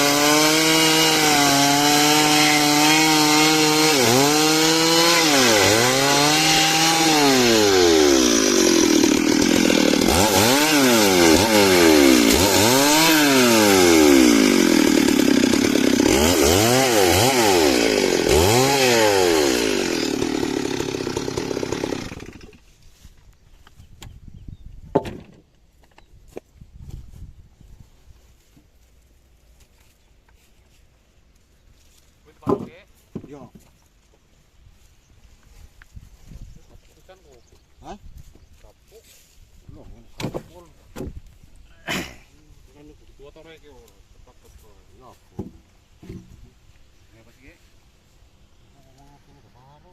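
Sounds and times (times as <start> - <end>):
chainsaw cutting wood: 0.0 - 22.7, 45.4 - 46.4.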